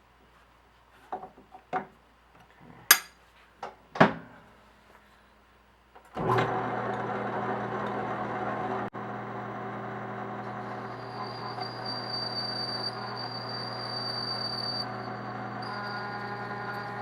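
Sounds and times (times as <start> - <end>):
lathe running with gear whine: 6.2 - 17.0.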